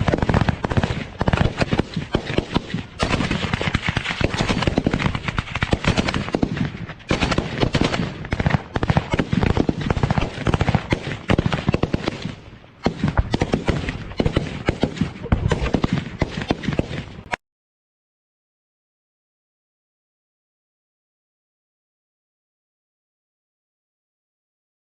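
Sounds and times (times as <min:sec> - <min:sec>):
automatic machine-gun fire: 0:00.0 - 0:17.2.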